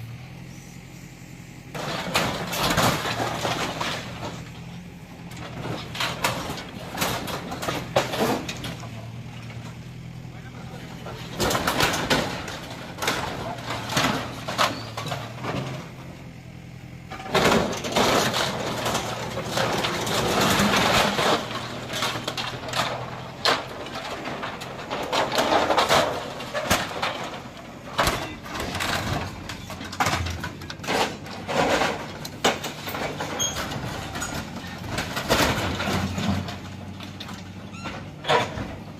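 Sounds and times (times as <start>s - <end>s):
bulldozer diesel engine: 0.0s - 38.9s
crashes of breaking material: 1.8s - 4.6s, 11.0s - 15.8s, 17.3s - 36.8s
voices: 5.4s - 15.4s, 18.8s - 36.6s.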